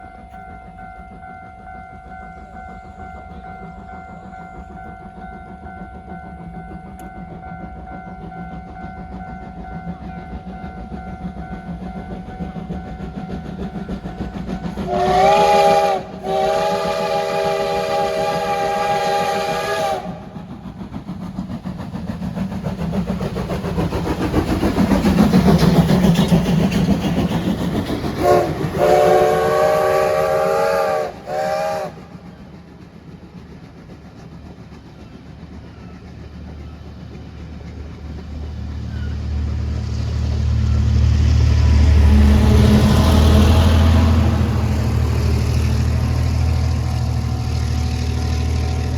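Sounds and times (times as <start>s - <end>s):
steam locomotive chime whistle: 0.0s - 12.4s, 13.3s - 20.5s, 28.2s - 32.5s, 38.8s - 48.9s
train passing rumble: 0.0s - 48.9s
low engine rumble: 31.0s - 48.9s.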